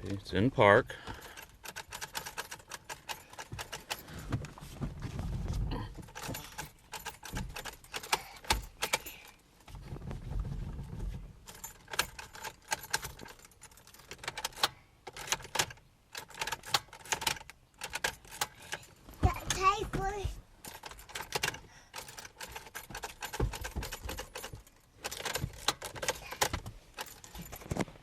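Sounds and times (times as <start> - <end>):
keys jangling: 1.2 - 4.3, 6.0 - 9.4, 11.4 - 19.8, 20.6 - 28.0.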